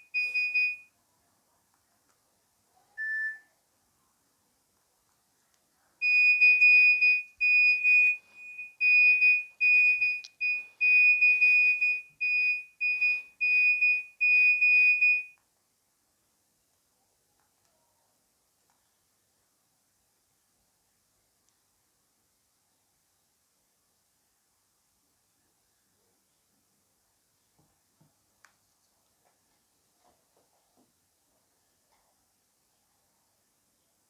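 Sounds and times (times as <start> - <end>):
short lower beep: 3.0 - 3.4.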